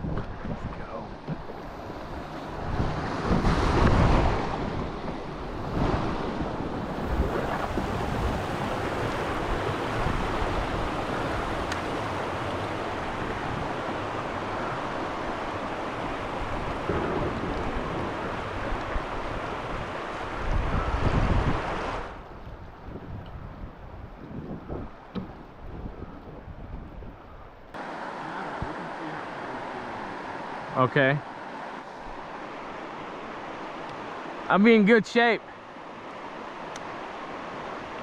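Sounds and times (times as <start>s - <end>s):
wind buffeting microphone: 0.0s - 27.8s
river water rushing: 0.9s - 22.3s, 27.8s - 38.0s.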